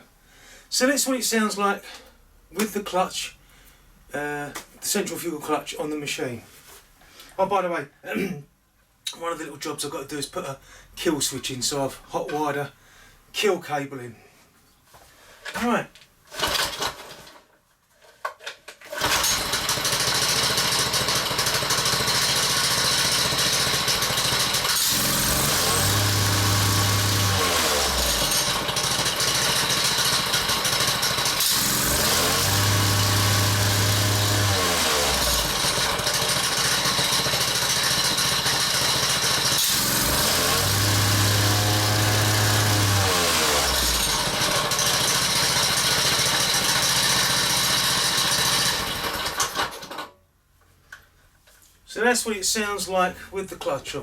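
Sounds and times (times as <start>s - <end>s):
petrol engine revving: 18.9s - 49.9s
plate compactor vibrating: 18.9s - 50.1s.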